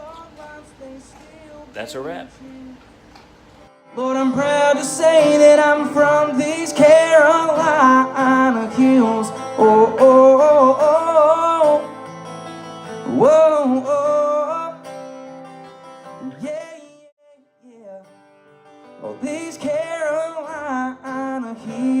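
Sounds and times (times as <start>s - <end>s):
person singing: 0.0s - 2.9s, 3.9s - 12.0s, 12.9s - 15.0s, 19.0s - 22.0s
acoustic guitar: 0.0s - 22.0s.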